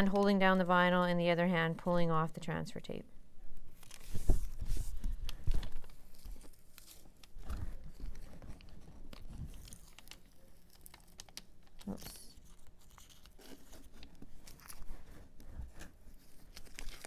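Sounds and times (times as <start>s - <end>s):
tape peeling off vinyl: 3.7s - 17.0s.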